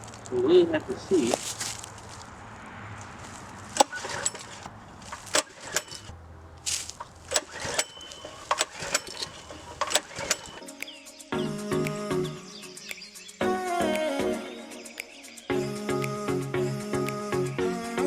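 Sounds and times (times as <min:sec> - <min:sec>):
short rasp: 0:03.6 - 0:06.1, 0:06.7 - 0:10.6
metallic clicks and knocks: 0:03.6 - 0:10.6.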